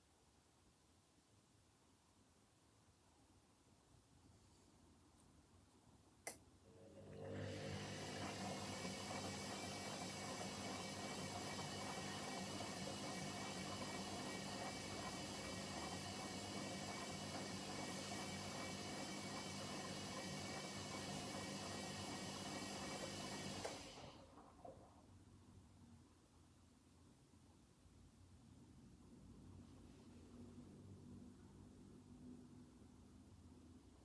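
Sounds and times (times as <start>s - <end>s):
washing machine motor hum: 6.6s - 25.0s.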